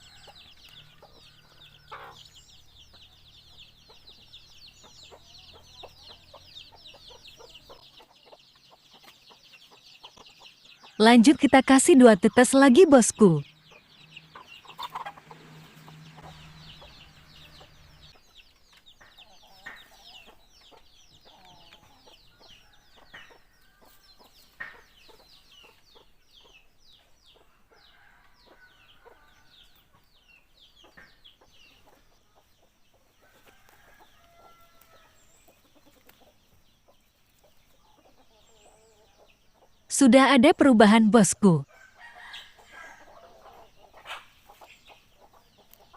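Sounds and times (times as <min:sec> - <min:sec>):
fowl clucking: 0:14.4 - 0:15.5, 0:42.3 - 0:44.7.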